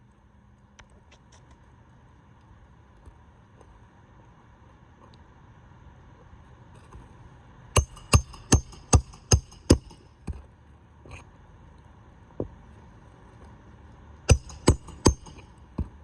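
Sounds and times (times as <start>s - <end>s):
hammer striking nail: 7.8s - 10.1s, 14.3s - 16.0s.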